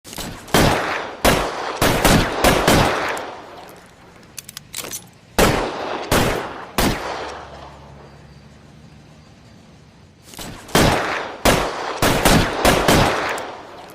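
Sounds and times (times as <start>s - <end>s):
light gun clicks: 3.0s - 5.2s.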